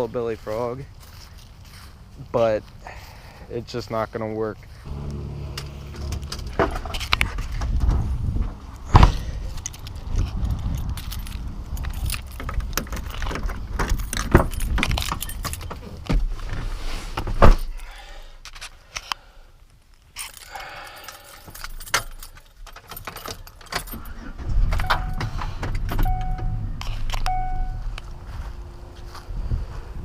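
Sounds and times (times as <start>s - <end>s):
low steady rumble: 4.9s - 10.4s, 24.4s - 30.0s.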